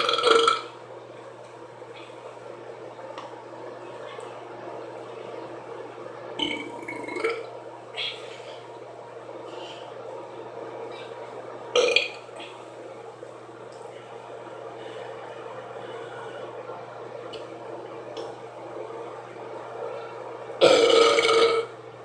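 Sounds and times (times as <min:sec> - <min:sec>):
woman burping: 0:20.6 - 0:21.7.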